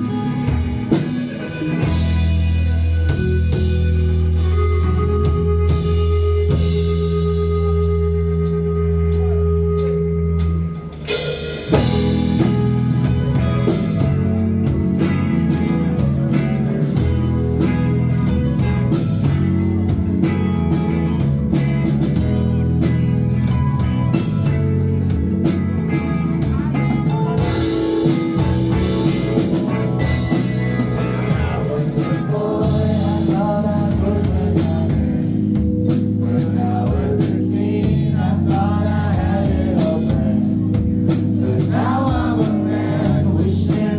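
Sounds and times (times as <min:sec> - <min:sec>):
live rock band playing: 0:00.0 - 0:43.9
person singing: 0:28.7 - 0:35.5.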